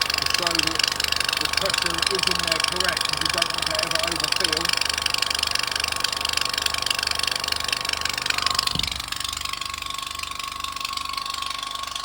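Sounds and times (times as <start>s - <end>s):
air compressor chattering: 0.0s - 12.0s
brief thump: 8.7s - 9.0s.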